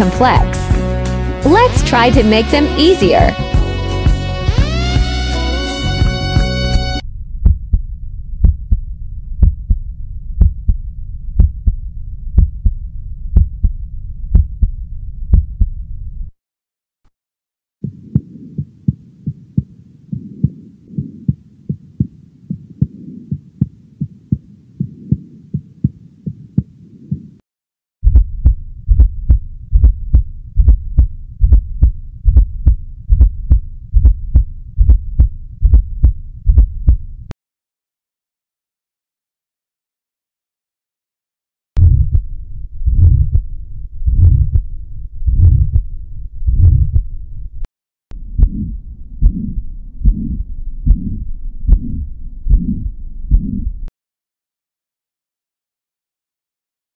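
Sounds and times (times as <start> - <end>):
steady sound between heartbeats: 6.4 - 16.3, 17.8 - 27.4, 28.0 - 37.3, 41.8 - 53.9
heartbeat thudding: 7.3 - 15.9, 17.8 - 27.4, 28.0 - 37.3, 41.8 - 47.6, 48.2 - 53.9.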